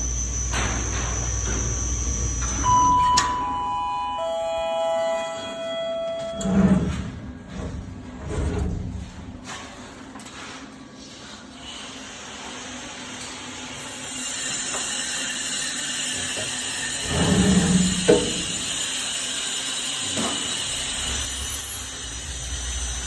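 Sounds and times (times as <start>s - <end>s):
service lift drive whining: 0.0s - 7.8s.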